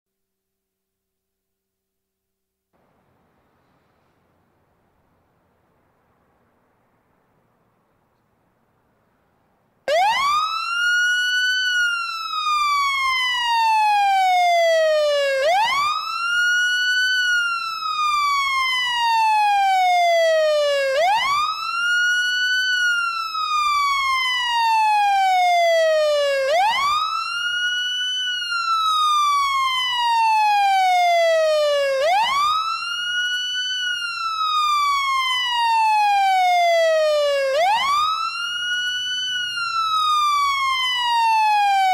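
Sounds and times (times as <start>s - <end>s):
fire engine siren wailing: 9.9s - 41.9s.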